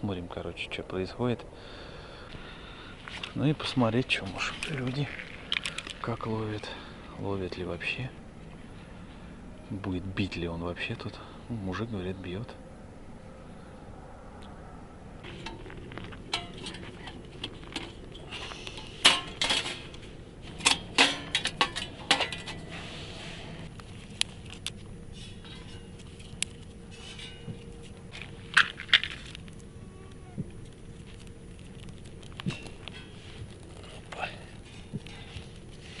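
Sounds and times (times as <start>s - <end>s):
small hard objects clinking: 4.4s - 6.4s, 25.4s - 29.7s.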